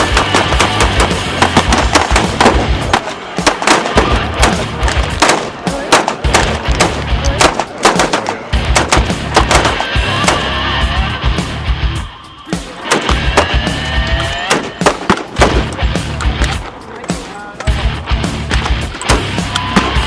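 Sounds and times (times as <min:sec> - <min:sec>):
music with bass beat: 0:00.0 - 0:02.9, 0:08.6 - 0:14.5, 0:15.4 - 0:16.8, 0:17.7 - 0:20.0
rapid gunshots: 0:00.0 - 0:10.6, 0:12.8 - 0:13.8, 0:14.4 - 0:16.0.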